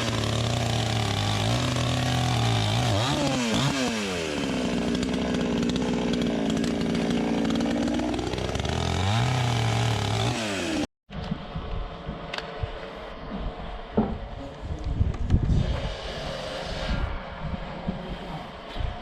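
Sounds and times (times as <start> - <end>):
chainsaw cutting wood: 0.0 - 10.9, 15.0 - 17.0.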